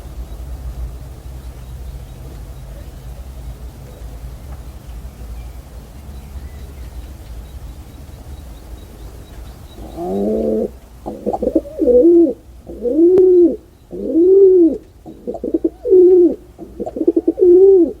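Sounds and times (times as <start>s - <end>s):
pigeon cooing: 9.8s - 18.0s.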